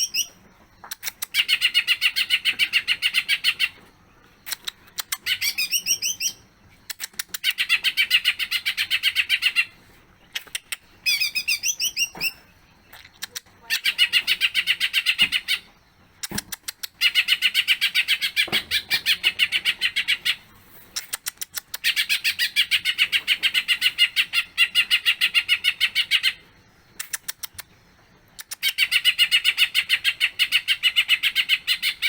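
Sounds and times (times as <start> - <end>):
sharp clicks: 0.8 - 1.4, 4.4 - 5.2, 6.8 - 7.6, 10.3 - 10.9, 16.2 - 17.0, 21.0 - 21.9, 27.0 - 27.7, 28.4 - 28.7
bird singing chattering notes: 4.4 - 20.4.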